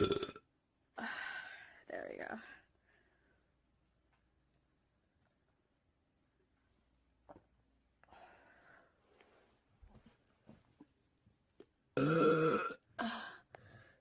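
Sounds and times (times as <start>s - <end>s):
person burping: 0.0s - 0.5s, 12.0s - 13.2s.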